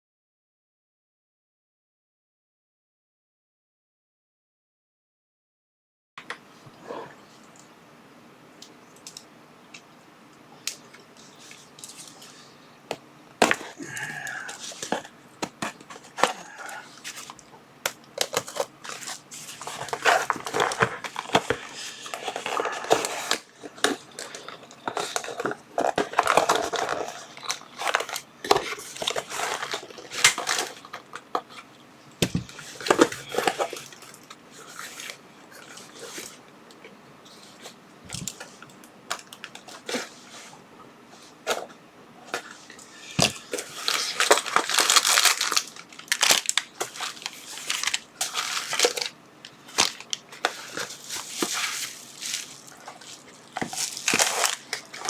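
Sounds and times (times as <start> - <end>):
plastic packaging crinkling: 13.4 - 36.4, 42.4 - 55.0.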